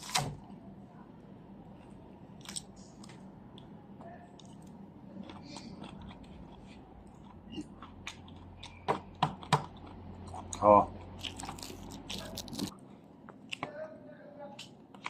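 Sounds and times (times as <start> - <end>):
person chewing food: 1.8 - 13.6.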